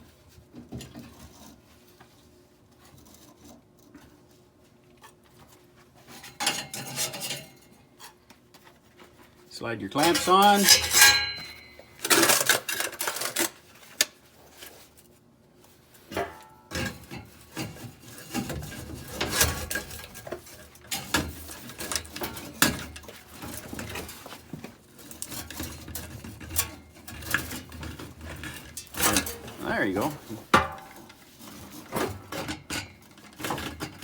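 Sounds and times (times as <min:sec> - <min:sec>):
metal pipes clinking and scraping: 0:06.0 - 0:08.2, 0:09.9 - 0:13.7, 0:16.0 - 0:34.0.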